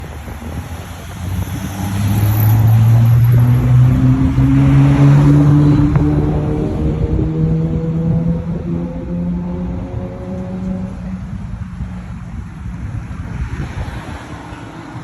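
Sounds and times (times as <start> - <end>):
engine speeding up: 1.1 - 11.9.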